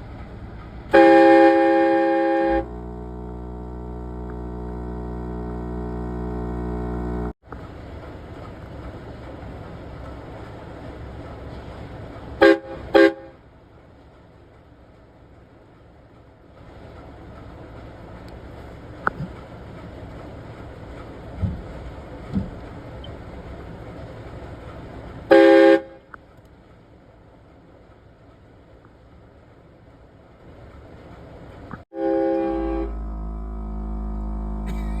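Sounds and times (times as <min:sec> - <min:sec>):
vehicle hum: 0:00.0 - 0:13.3, 0:14.7 - 0:35.0
air horn blasts: 0:00.9 - 0:07.4, 0:12.4 - 0:13.4, 0:25.3 - 0:26.0, 0:31.9 - 0:35.0.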